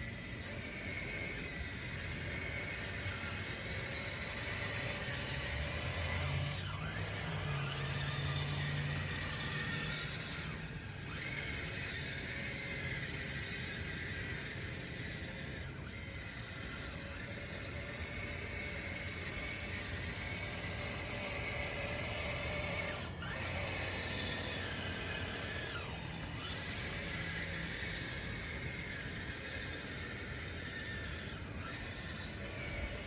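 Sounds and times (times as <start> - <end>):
electric motors whining: 0.0 - 33.0.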